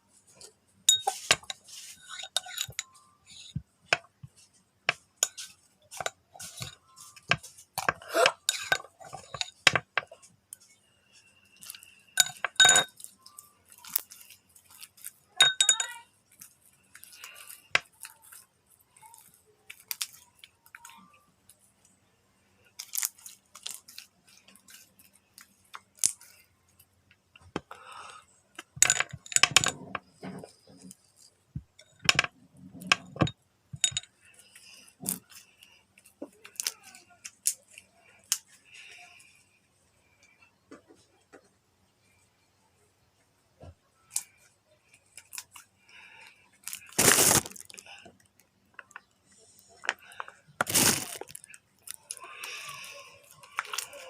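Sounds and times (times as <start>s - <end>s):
utensils clinking against dishes: 0.9s - 4.1s, 5.2s - 9.8s, 11.5s - 14.8s, 15.4s - 16.0s, 31.8s - 34.1s.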